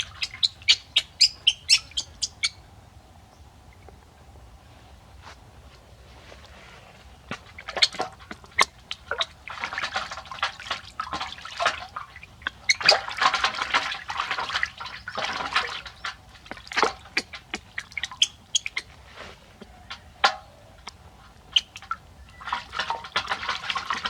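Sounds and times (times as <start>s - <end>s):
water splashing in a bath: 7.3s - 24.0s
water dripping: 7.4s - 19.0s, 19.6s - 24.0s.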